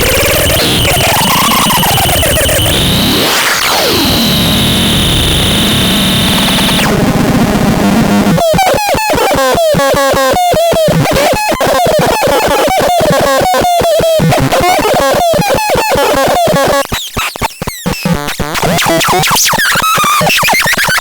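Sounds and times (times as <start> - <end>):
chopped stuttering synth tone: 0.0 - 7.3
harsh synthesizer texture: 0.0 - 7.4.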